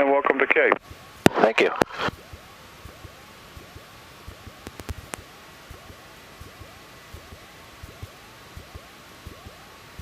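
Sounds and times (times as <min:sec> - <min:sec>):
intercom hiss: 0:00.0 - 0:02.2.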